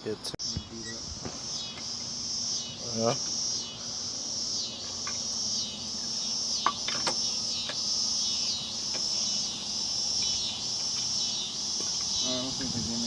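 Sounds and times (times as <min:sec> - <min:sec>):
insects chirring: 0:00.1 - 0:13.0
metal clinks: 0:10.2 - 0:12.2.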